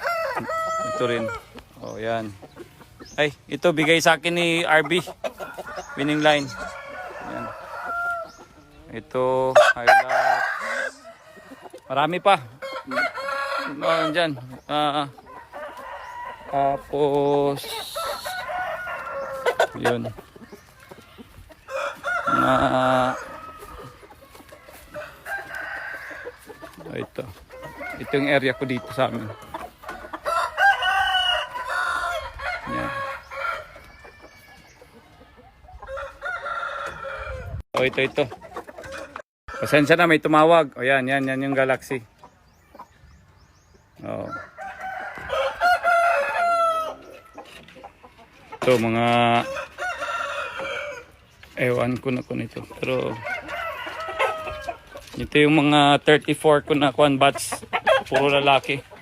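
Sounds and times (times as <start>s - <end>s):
rooster crowing: 0.0s - 1.6s, 5.4s - 8.6s, 9.4s - 14.3s, 15.3s - 16.9s, 17.8s - 19.8s, 21.6s - 34.7s, 35.8s - 37.6s, 44.1s - 47.2s, 49.3s - 51.1s, 53.0s - 54.9s.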